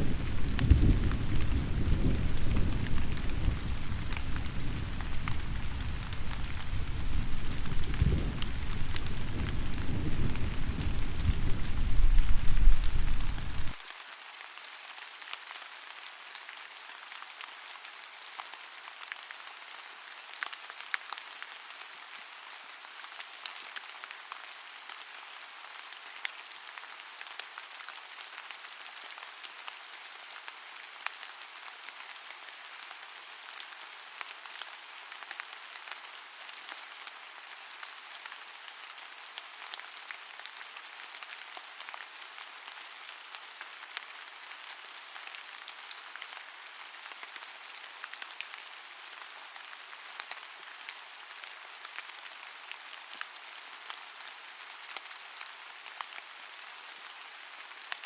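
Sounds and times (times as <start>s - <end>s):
steady rain patter: 0.0s - 58.0s.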